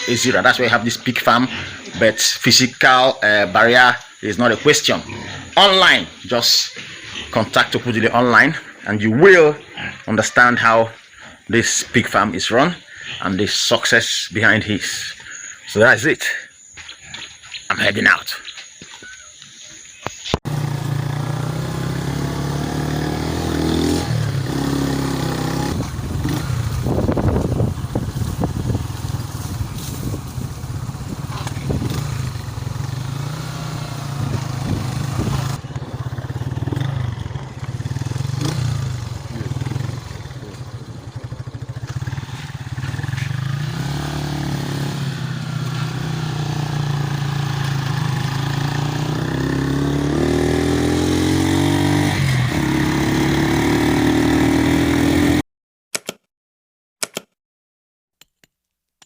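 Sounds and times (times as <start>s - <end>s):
road noise: 0.0s - 55.4s
vehicle engine running: 20.5s - 51.2s.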